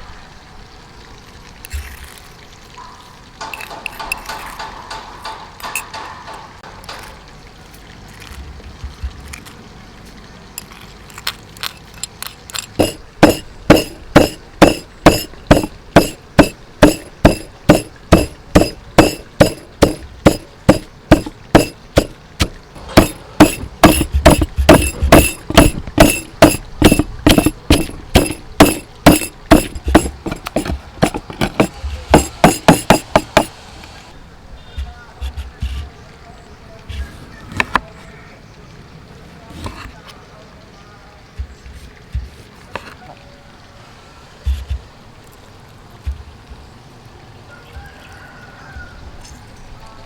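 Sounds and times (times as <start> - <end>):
sharp ringing kitchen strikes: 12.8 - 33.6.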